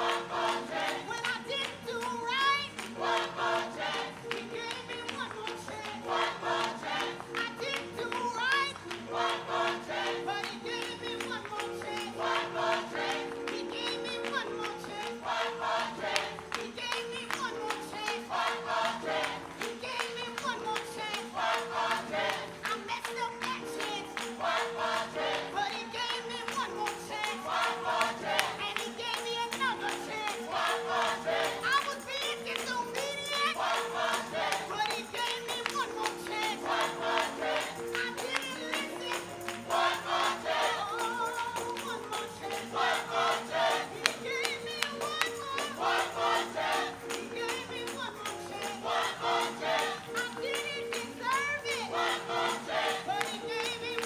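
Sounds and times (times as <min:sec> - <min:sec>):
gospel choir singing: 0:00.0 - 0:54.0
tambourine: 0:23.4 - 0:54.0.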